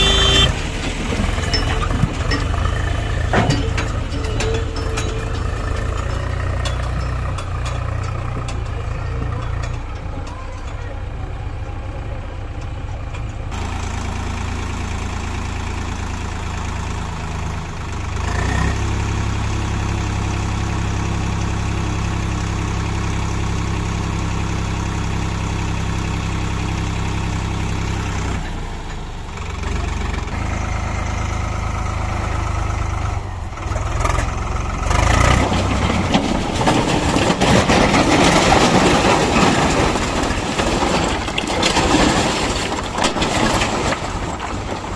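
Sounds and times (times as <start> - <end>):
loud rough clattering: 0.0 - 10.9, 33.6 - 44.9
heavy diesel engine running: 0.0 - 44.9.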